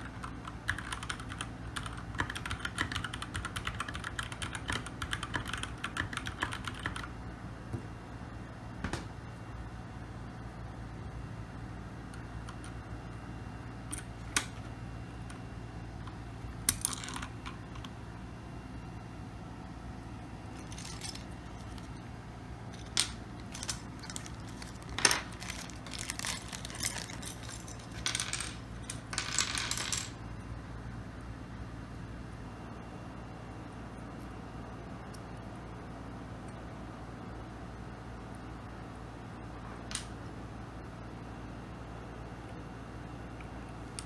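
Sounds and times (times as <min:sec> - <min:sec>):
low steady hum: 0:00.0 - 0:44.0
small hard objects clicking: 0:20.6 - 0:21.9, 0:22.8 - 0:29.3.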